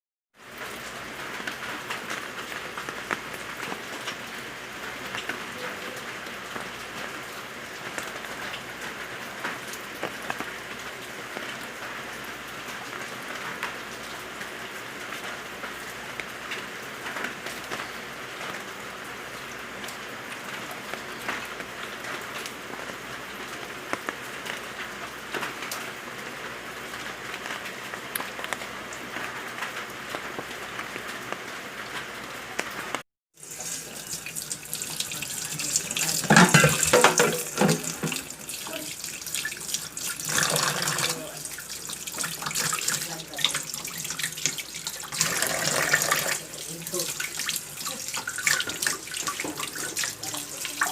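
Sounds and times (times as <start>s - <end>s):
steady hiss of water: 0.4s - 50.9s
tap water splashing into sink: 33.4s - 50.9s.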